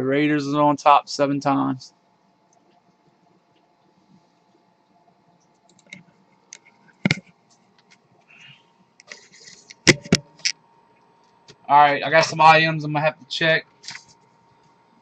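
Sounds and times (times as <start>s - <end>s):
computer keyboard and mouse clicks: 5.4s - 8.0s.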